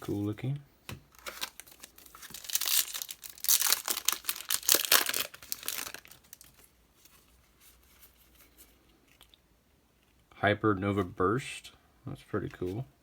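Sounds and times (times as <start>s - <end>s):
foil wrapper crinkling and tearing: 1.1s - 6.7s.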